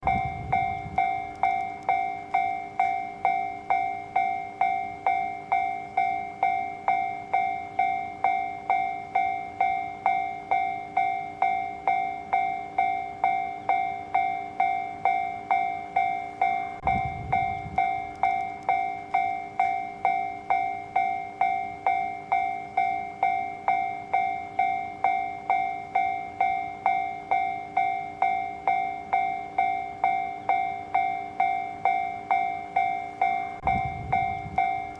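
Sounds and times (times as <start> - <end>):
low rumble: 0.0 - 1.4, 16.8 - 18.2, 33.6 - 34.8
level crossing bell clanging: 0.0 - 34.9.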